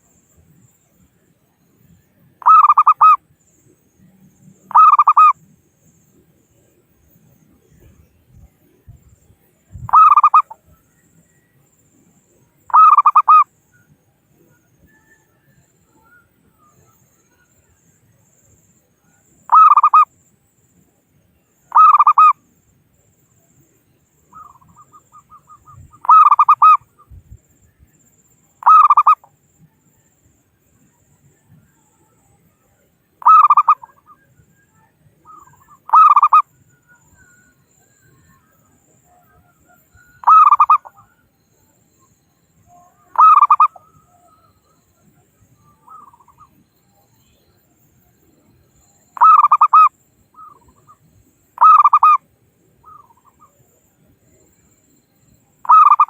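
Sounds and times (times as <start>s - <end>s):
dove cooing: 2.4s - 3.2s, 4.7s - 5.3s, 9.9s - 10.6s, 12.7s - 13.4s, 19.5s - 20.0s, 24.3s - 26.8s, 28.6s - 29.3s, 33.2s - 34.1s, 34.8s - 36.4s, 39.4s - 41.1s, 43.0s - 44.4s, 49.2s - 51.0s, 51.6s - 52.2s.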